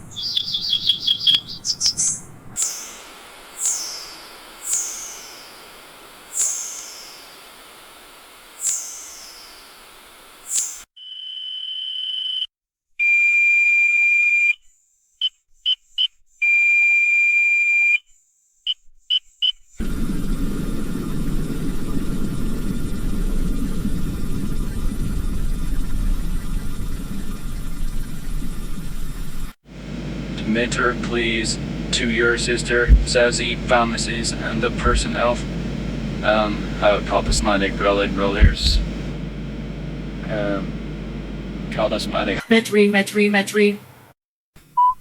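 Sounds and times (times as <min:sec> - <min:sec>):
falling chirps: 0:00.0 - 0:12.2, 0:29.8 - 0:42.4
steady low rumble: 0:19.8 - 0:28.6, 0:29.7 - 0:42.4
electronic beeps: 0:30.4 - 0:42.4.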